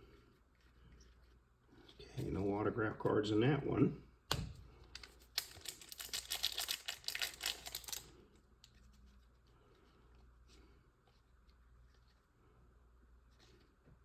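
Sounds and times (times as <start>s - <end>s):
wrapper tearing and crinkling: 5.0s - 8.2s.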